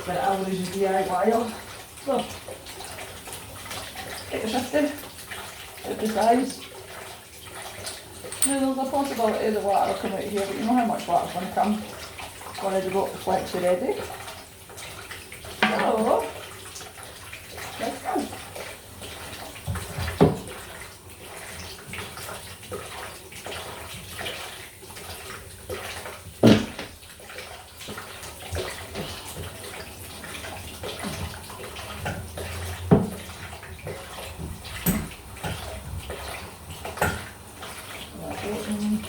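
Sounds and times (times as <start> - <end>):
water running in pipes: 0.0 - 39.0
pipe knocks: 19.7 - 20.6, 26.4 - 27.0, 32.0 - 33.3, 34.4 - 36.2.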